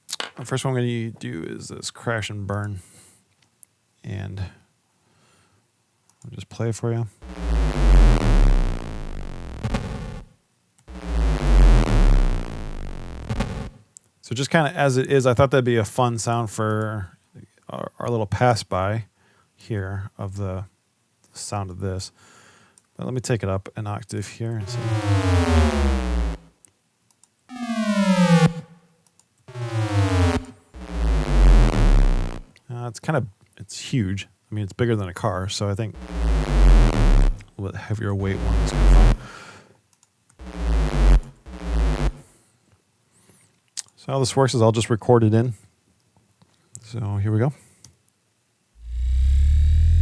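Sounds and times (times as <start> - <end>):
deep synth rumble: 7.2 - 10.2, 10.9 - 13.6, 24.6 - 26.4, 29.5 - 32.4, 36.0 - 37.5, 38.2 - 39.2, 40.4 - 42.2, 48.8 - 50.0
buzzy synth sweep falling in pitch: 7.2 - 10.3, 10.9 - 13.7, 24.6 - 26.5, 27.5 - 28.9, 29.5 - 32.5, 36.0 - 37.5, 38.2 - 39.2, 40.4 - 42.2, 48.8 - 50.0.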